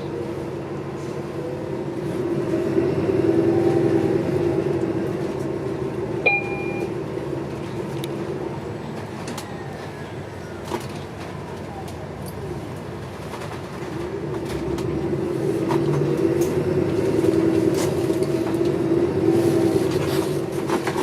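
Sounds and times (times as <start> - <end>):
bus engine drone: 0.0 - 21.0
short electronic beep: 6.3 - 6.9.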